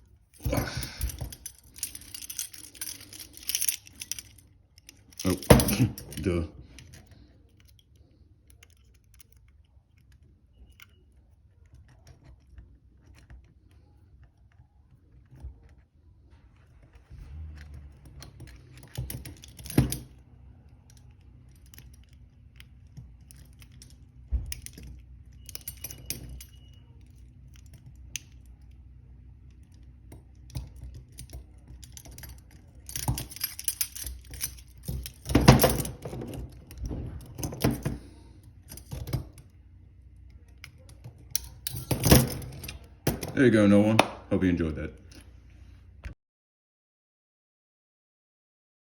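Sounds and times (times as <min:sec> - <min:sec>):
lock pick clicking and scraping: 0:00.0 - 0:15.8, 0:16.6 - 0:44.2
handcuff clattering open: 0:00.2 - 0:11.0, 0:17.9 - 0:28.8, 0:29.4 - 0:39.5, 0:40.3 - 0:43.4.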